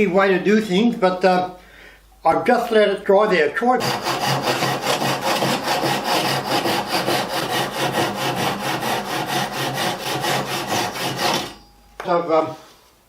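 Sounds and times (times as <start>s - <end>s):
rasping strokes on wood: 3.8s - 11.6s.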